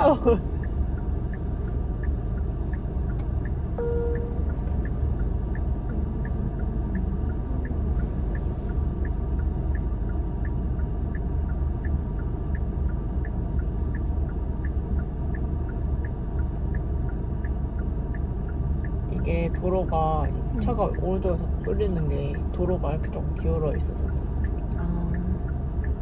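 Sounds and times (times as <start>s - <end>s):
car road and engine rumble: 0.0s - 26.0s
turn signal ticking: 0.0s - 26.0s.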